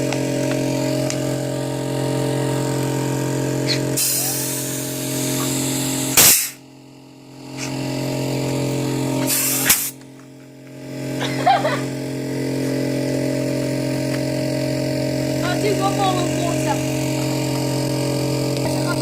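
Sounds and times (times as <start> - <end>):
air compressor humming: 0.0 - 19.0
compressed air blasts hissing: 2.4 - 6.7, 8.8 - 10.1.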